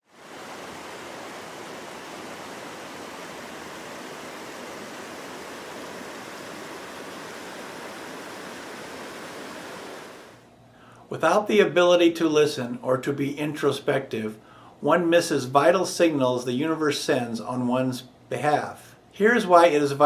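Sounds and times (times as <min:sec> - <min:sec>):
rushing water: 0:00.0 - 0:10.4.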